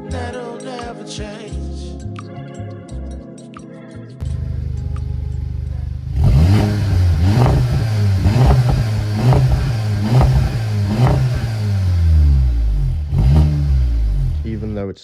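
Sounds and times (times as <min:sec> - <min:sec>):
car engine revving in blips: 0:04.2 - 0:14.8
exhaust leak blowing: 0:04.2 - 0:14.8.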